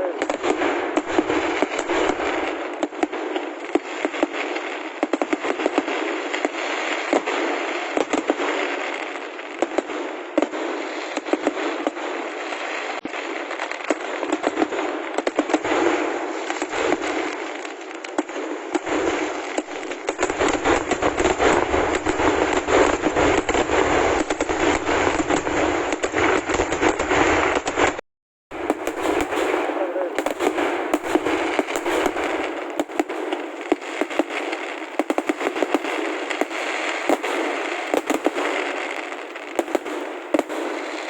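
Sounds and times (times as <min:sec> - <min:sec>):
deep firework booms: 0:00.0 - 0:12.3, 0:13.1 - 0:41.0
rapid firecracker bangs: 0:00.0 - 0:41.0.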